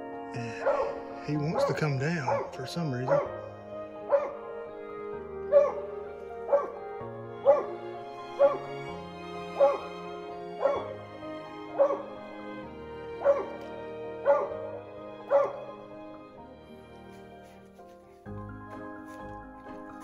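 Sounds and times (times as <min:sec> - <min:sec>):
background music: 0:00.0 - 0:20.0
dog barking: 0:00.5 - 0:03.5, 0:04.1 - 0:04.4, 0:05.5 - 0:06.8, 0:07.4 - 0:10.9, 0:11.8 - 0:12.2, 0:13.2 - 0:15.7.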